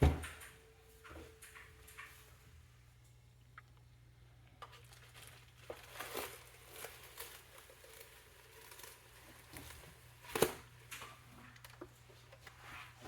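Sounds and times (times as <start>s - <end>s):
crinkling rustles: 4.5s - 13.0s.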